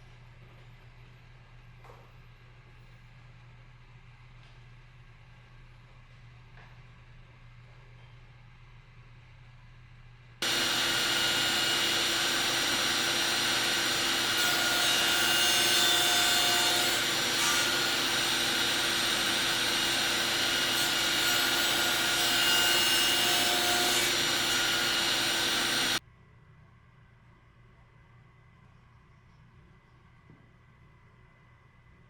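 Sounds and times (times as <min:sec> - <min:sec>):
power tool cutting wood: 0:10.4 - 0:26.0.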